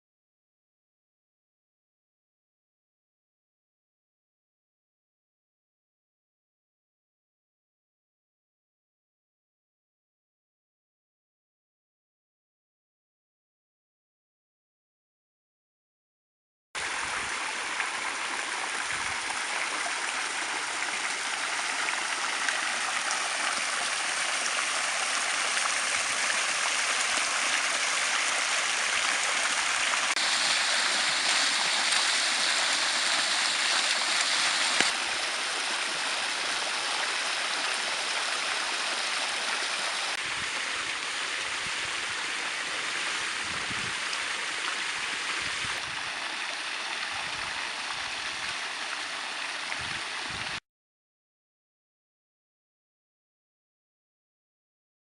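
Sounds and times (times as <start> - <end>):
falling splashing water: 16.8 - 50.6.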